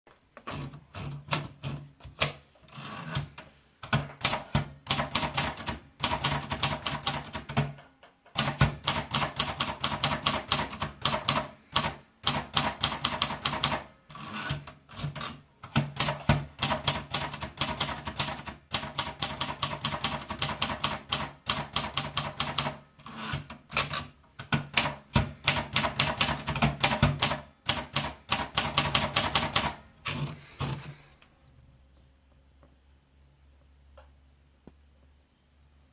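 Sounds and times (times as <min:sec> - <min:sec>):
manual typewriter typing: 0:00.5 - 0:30.9.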